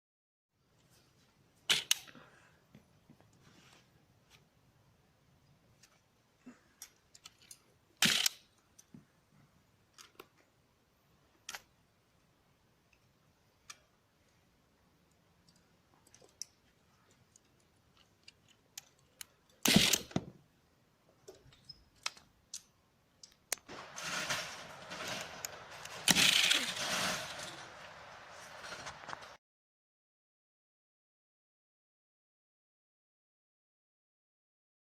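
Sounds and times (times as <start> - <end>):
dense plastic clattering: 23.7 - 29.1.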